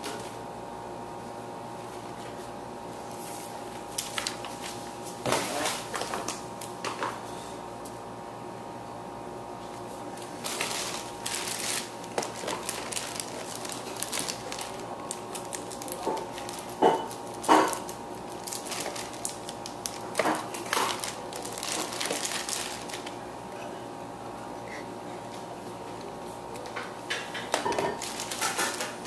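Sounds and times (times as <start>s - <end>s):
plastic packaging crinkling: 3.7s - 6.4s, 10.2s - 23.2s, 27.5s - 29.0s.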